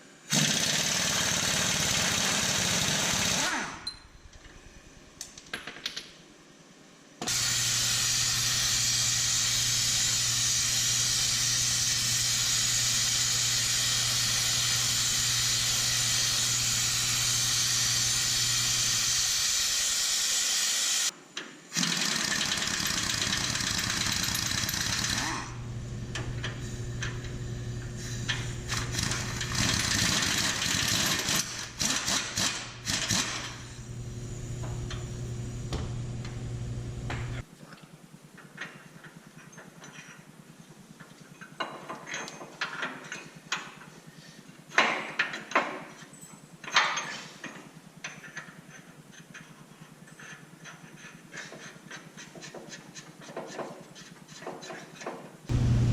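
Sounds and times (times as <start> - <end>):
machine motor humming and hissing: 7.3 - 21.1, 55.5 - 55.9.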